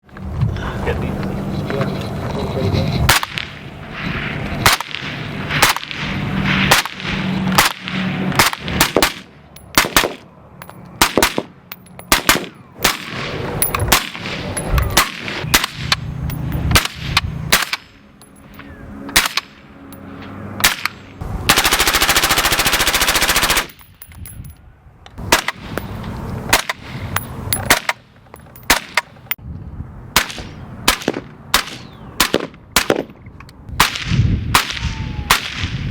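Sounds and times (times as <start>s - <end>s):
rapid gunfire burst: 21.5s - 23.7s.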